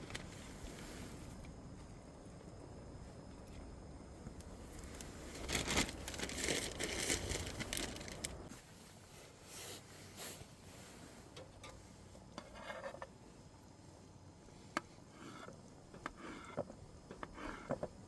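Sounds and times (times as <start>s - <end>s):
material crinkling and tearing: 5.3s - 8.4s.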